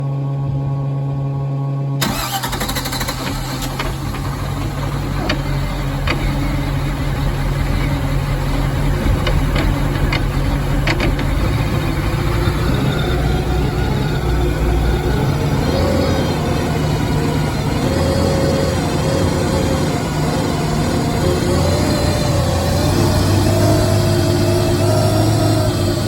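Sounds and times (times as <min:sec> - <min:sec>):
car engine idling roughly: 0:02.0 - 0:26.0
car engine starting: 0:02.0 - 0:26.0.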